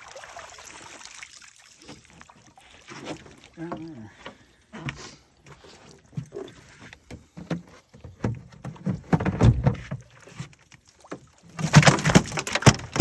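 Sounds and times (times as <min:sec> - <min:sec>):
water sounds: 0:00.0 - 0:08.3
knocks and thumps of gear in boat: 0:02.9 - 0:13.0.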